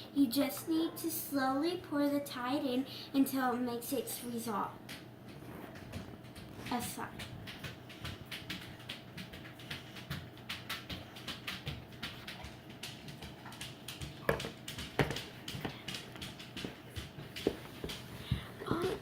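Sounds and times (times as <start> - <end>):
spoon stirring slime: 13.6 - 19.0.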